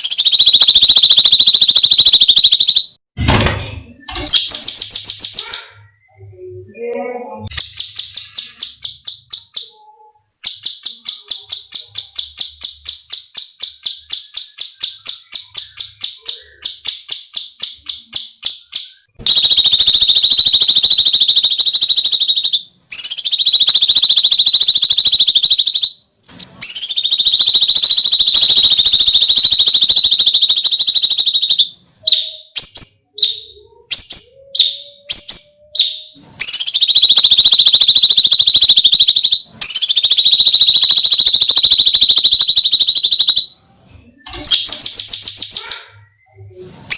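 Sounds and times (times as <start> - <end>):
bird calling: 0.0 - 2.9, 33.2 - 43.5.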